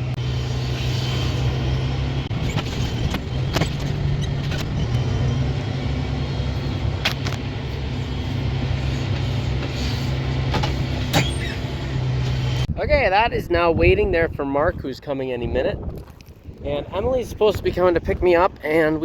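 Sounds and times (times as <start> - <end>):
tractor engine running: 0.0 - 12.7
sharp clicks and clanks: 2.3 - 5.0.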